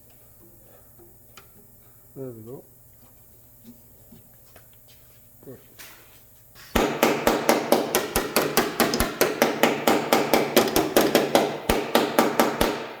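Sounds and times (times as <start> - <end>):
hammer tapping on metal panel: 6.8 - 13.0.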